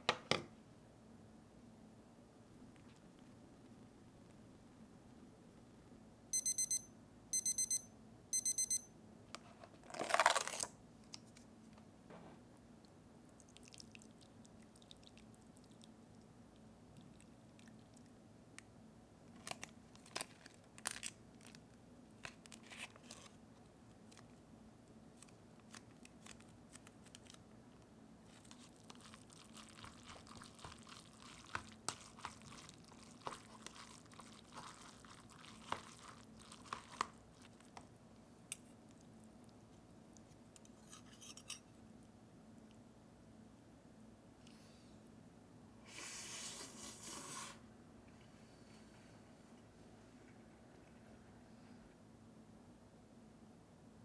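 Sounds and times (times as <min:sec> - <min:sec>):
appliance beeps: 0:06.4 - 0:08.9
person crunching noodles: 0:09.9 - 0:10.7, 0:28.3 - 0:37.8.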